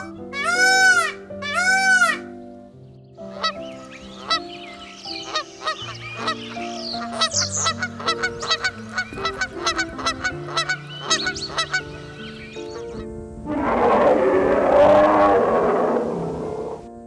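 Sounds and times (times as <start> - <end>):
birds honking: 0.0 - 2.6, 3.2 - 13.1
background music: 0.0 - 17.0.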